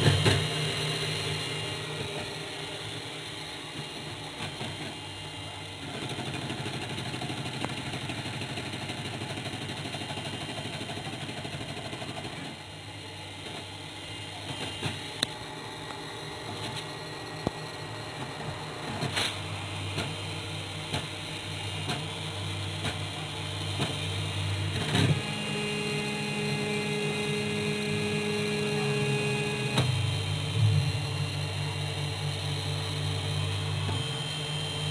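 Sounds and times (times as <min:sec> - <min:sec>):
stepper motors whirring: 0:00.0 - 0:34.9.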